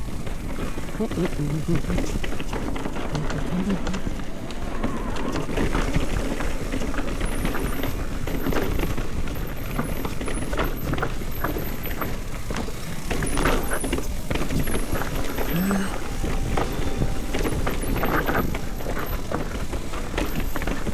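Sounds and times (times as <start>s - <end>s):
bike rattling over bumps: 0.0s - 20.9s
tyres on dirt and rocks: 0.0s - 20.9s
wind over microphone: 11.1s - 20.9s
high-pitched squeals: 13.1s - 20.9s.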